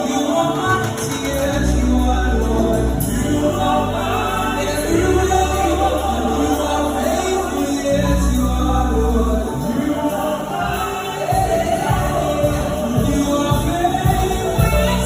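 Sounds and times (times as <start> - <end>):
band with deep bass line: 0.0 - 15.0
choir singing: 0.0 - 15.0.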